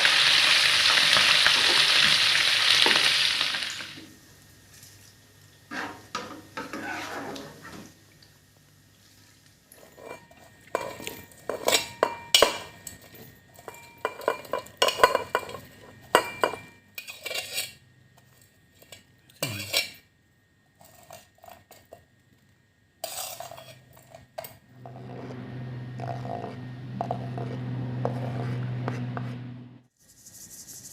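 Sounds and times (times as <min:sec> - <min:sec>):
metal utensils clinking on dishes: 0:09.8 - 0:17.8, 0:18.8 - 0:20.0, 0:23.0 - 0:24.6
low hum: 0:24.6 - 0:29.9.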